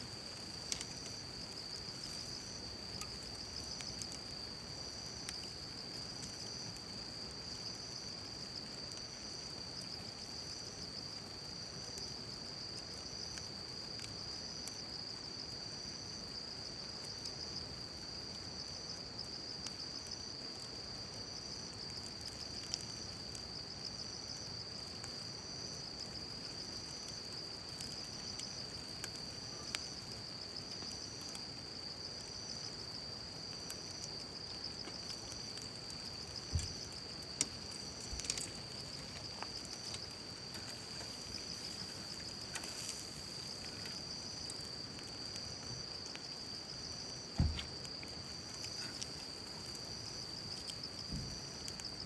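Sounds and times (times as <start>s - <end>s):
insects trilling: 0.0s - 52.0s
sharp pops: 47.4s - 47.8s.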